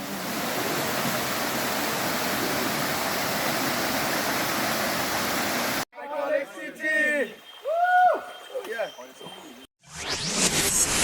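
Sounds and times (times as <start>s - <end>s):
waterfall rushing: 0.0s - 5.8s.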